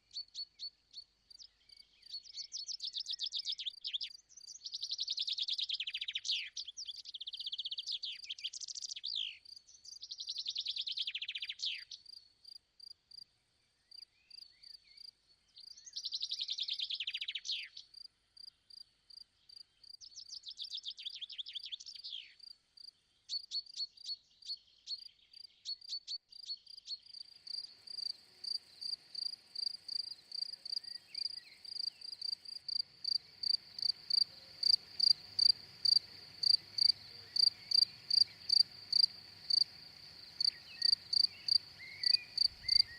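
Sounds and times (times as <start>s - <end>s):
cricket chirping: 26.3s - 42.9s
songbird trilling: 40.3s - 42.9s.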